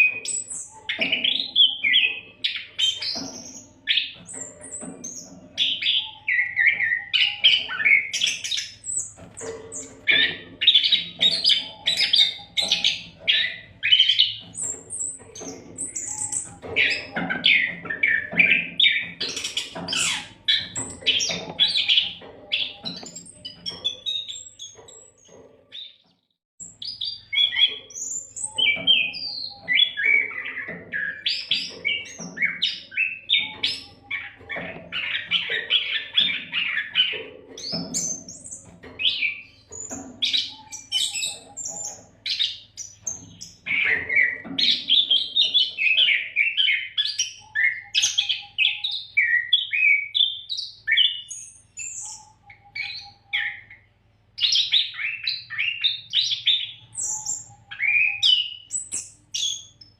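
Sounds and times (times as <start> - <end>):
bird singing: 0.0 - 59.9.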